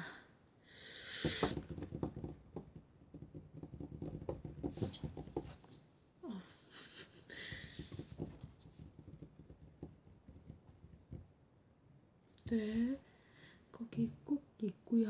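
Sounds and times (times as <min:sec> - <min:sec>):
short hiss: 0:00.8 - 0:01.6
light tapping and clicking: 0:01.2 - 0:05.8, 0:07.5 - 0:11.3.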